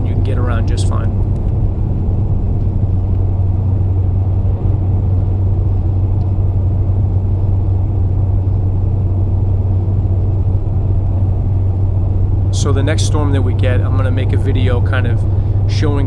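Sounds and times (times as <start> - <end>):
tyre and road noise through snow: 0.0 - 6.0, 11.0 - 16.0
car engine cruising drone: 0.0 - 9.0, 10.9 - 16.0.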